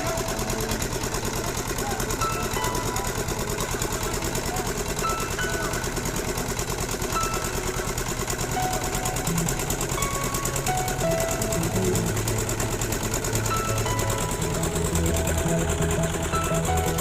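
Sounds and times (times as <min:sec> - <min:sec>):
boat engine clattering: 0:00.0 - 0:17.0.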